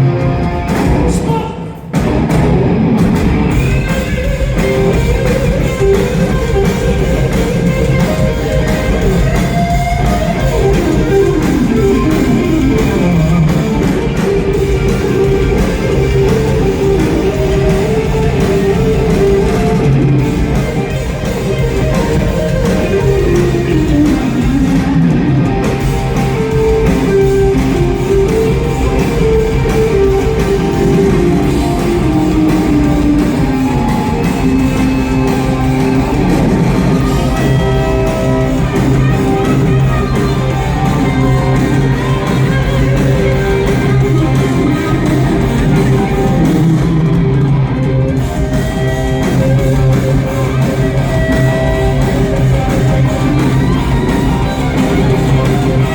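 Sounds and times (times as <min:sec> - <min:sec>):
electric guitar lead line: 0:00.0 - 0:55.9
live rock band playing: 0:00.0 - 0:55.9.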